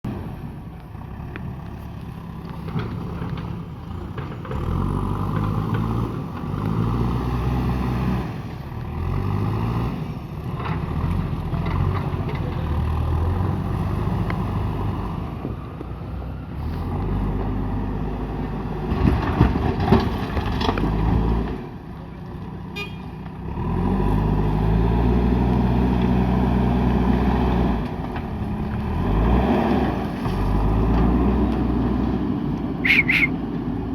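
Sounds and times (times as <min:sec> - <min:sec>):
diesel engine revving: 0:00.1 - 0:21.8, 0:23.3 - 0:33.9.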